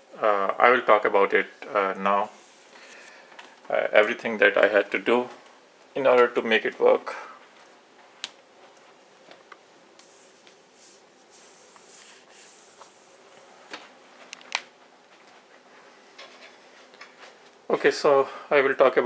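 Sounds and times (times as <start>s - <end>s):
soft rustle: 1.8s - 3.7s, 7.4s - 17.9s.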